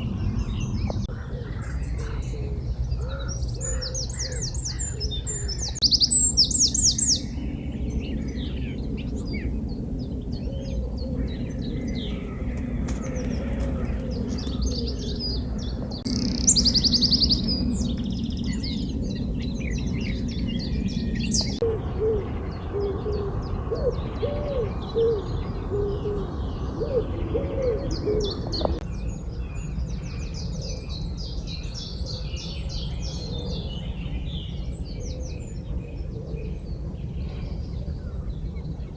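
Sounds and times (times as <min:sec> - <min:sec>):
low cooing calls: 0:00.0 - 0:20.2, 0:21.0 - 0:28.8, 0:31.9 - 0:34.0
steady low rumble: 0:00.0 - 0:32.0
songbirds singing: 0:00.0 - 0:38.9.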